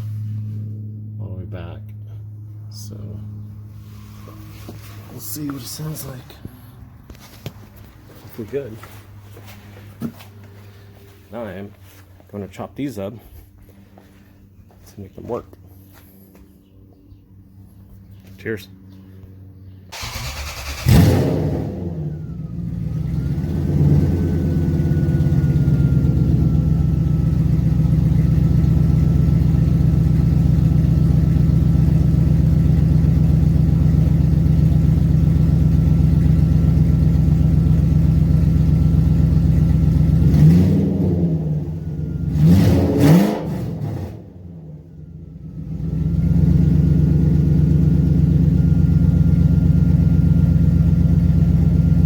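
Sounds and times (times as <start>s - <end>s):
car engine revving and idling: 20.0s - 52.0s.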